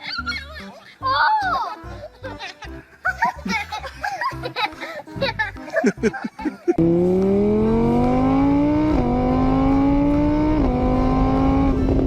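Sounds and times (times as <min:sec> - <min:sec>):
engine accelerating through gears: 0:06.8 - 0:12.0.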